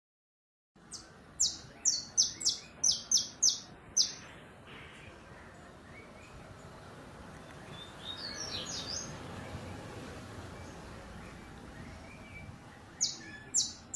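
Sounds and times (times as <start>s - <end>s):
songbird singing high notes: 0.9s - 4.2s, 7.4s - 9.9s, 10.5s - 13.9s.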